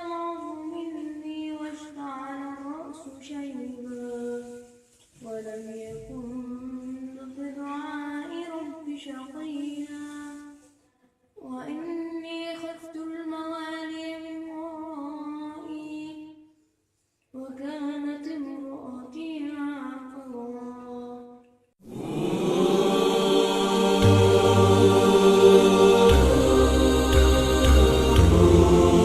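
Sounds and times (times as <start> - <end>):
person reciting melodically: 21.9 - 29.0
music with deep bass: 24.0 - 29.0.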